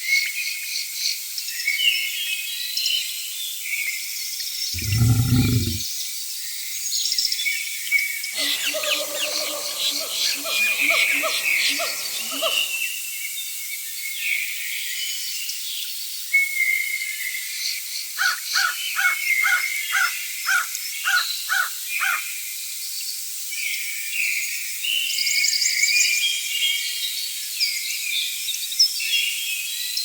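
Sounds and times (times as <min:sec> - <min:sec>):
animal giving loud calls: 0:04.8 - 0:05.8, 0:08.4 - 0:12.8
birds calling: 0:04.8 - 0:05.8, 0:08.4 - 0:12.9
insects chirping: 0:08.4 - 0:12.8.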